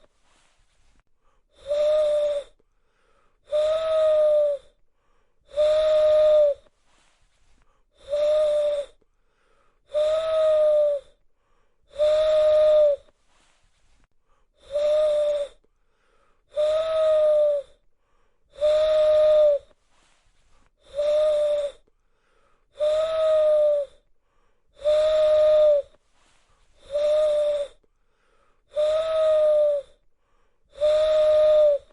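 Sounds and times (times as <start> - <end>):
hissing owl call: 1.6 - 2.6, 3.5 - 4.8, 5.5 - 6.7, 8.0 - 9.0, 9.9 - 11.2, 11.9 - 13.1, 14.6 - 15.6, 16.5 - 17.8, 18.5 - 20.1, 20.8 - 21.9, 22.7 - 24.0, 24.8 - 27.8, 28.7 - 30.0, 30.7 - 31.9.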